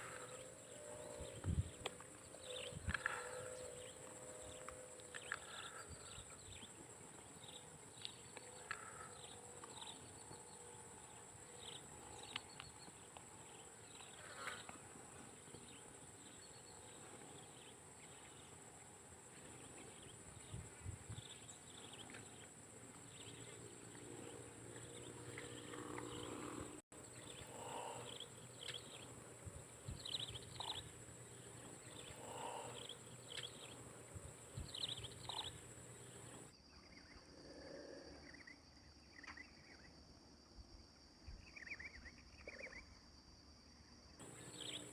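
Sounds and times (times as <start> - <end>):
high-pitched insect drone: 19.3 - 37.2.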